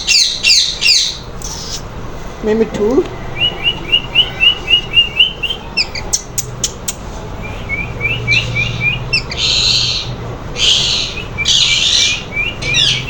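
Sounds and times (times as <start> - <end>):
harsh parrot calls: 0.0 - 1.9, 3.2 - 13.0
parrots chirping: 0.0 - 13.0.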